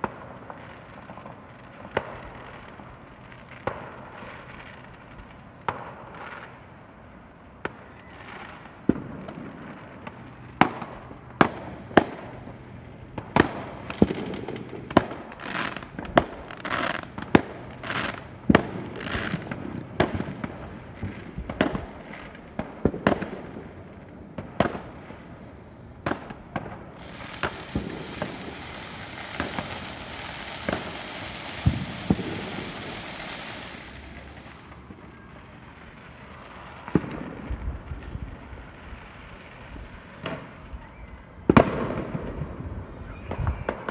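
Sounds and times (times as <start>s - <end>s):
fireworks bangs: 22.6s - 37.6s
steady hiss: 26.8s - 35.0s.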